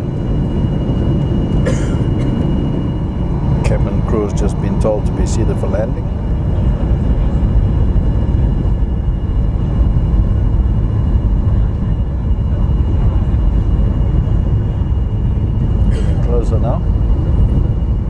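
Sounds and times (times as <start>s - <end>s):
faint high whine: 0.0s - 18.0s
jet engines rumbling in cabin: 0.0s - 18.0s.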